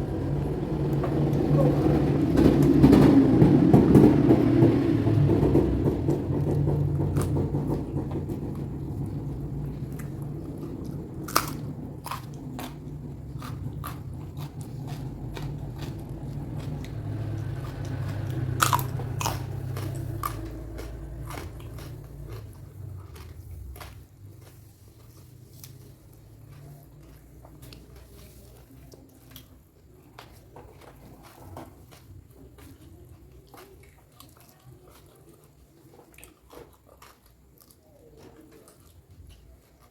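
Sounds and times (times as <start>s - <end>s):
person chewing food: 5.2s - 39.9s
crunching bites: 9.9s - 28.1s.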